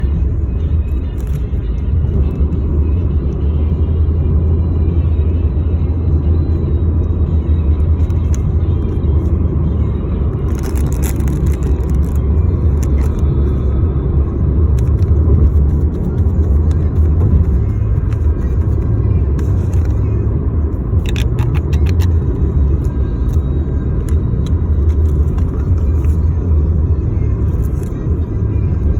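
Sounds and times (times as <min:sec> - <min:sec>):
steady low rumble: 0:00.0 - 0:28.9
scattered clicks: 0:20.9 - 0:22.4.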